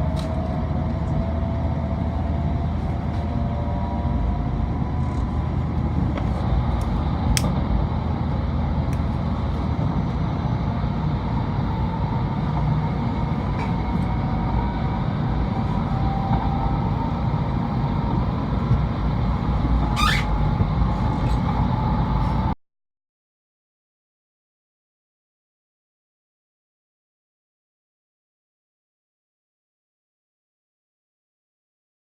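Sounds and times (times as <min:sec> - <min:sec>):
train low rumble: 0:00.0 - 0:22.6
train rising squeal: 0:13.6 - 0:22.5.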